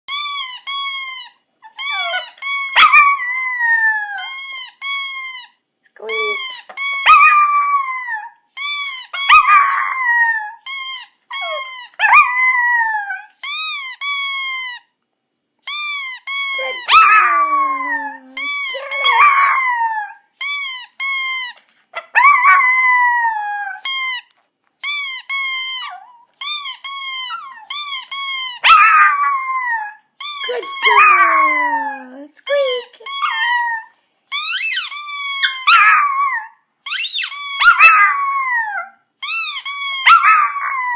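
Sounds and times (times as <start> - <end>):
squeaky toy squeaking: 0.1 - 3.3, 4.1 - 7.9, 8.6 - 12.5, 13.4 - 15.0, 15.6 - 22.4, 23.8 - 36.2, 36.8 - 38.5, 39.2 - 40.9
dog howling: 11.4 - 13.4, 16.6 - 20.3, 22.1 - 23.8, 28.7 - 32.2, 37.6 - 39.0, 40.1 - 40.9.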